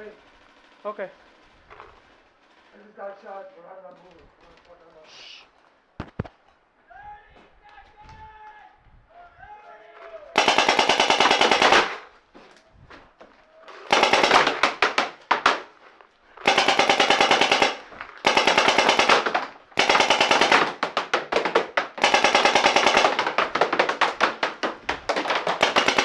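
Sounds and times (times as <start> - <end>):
paintball markers firing bursts: 10.4 - 12.1, 13.9 - 15.7, 16.4 - 26.0.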